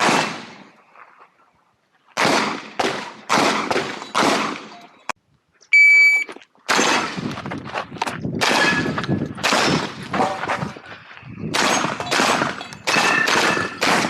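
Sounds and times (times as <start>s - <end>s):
shotgun shots: 0.0s - 0.7s, 2.2s - 4.8s, 6.7s - 7.4s, 8.4s - 10.3s, 11.5s - 14.0s
shot timer electronic beep: 5.8s - 6.3s.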